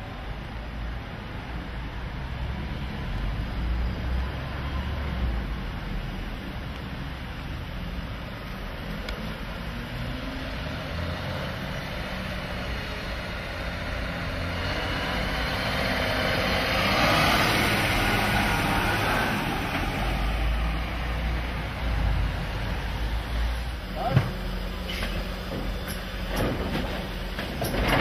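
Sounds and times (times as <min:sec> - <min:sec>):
garbage truck engine rumble: 0:07.2 - 0:28.0
broad mechanical noise: 0:22.4 - 0:28.0.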